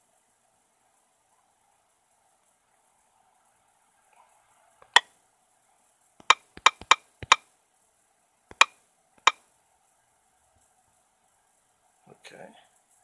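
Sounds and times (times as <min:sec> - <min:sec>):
sharp clicks: 0:04.8 - 0:05.0, 0:06.2 - 0:07.4, 0:08.5 - 0:09.4.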